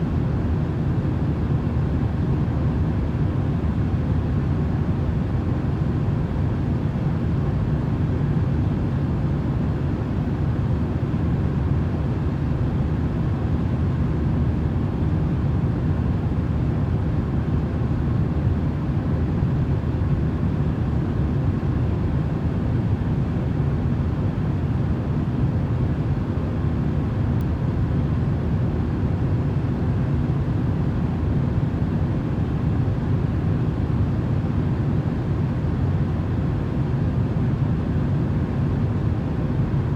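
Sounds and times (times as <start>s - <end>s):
steady rumbling noise: 0.0s - 39.9s.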